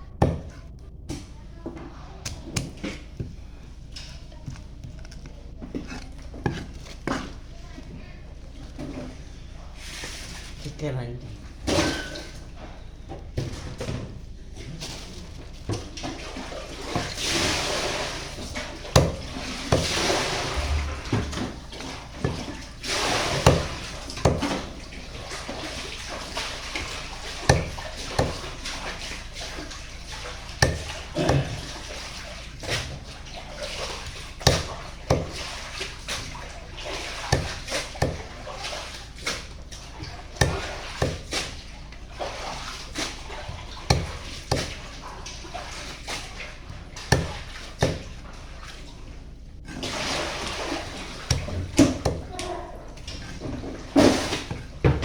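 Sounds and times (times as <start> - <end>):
knife chopping on cutting board: 0.2 - 0.6, 18.9 - 20.0, 23.2 - 24.7, 27.5 - 28.8, 30.6 - 31.7, 34.0 - 35.5, 37.2 - 38.3, 40.4 - 41.5, 43.9 - 44.8, 47.1 - 48.1, 51.3 - 52.4
water running: 2.1 - 55.0.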